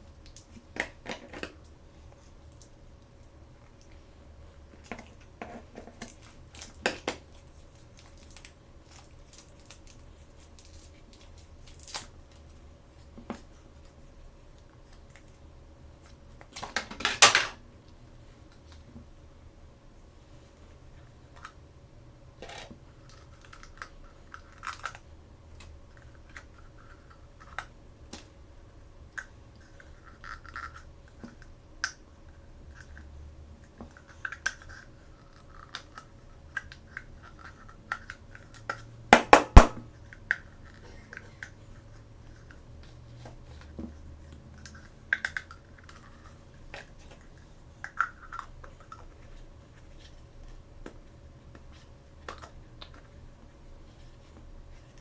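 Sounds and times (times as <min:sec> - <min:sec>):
plastic toys clicking and tapping: 0:44.6 - 0:49.2.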